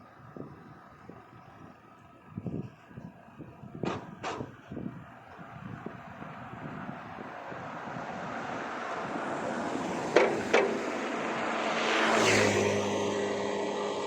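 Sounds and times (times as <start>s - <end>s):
vehicle passing: 7.4s - 14.0s.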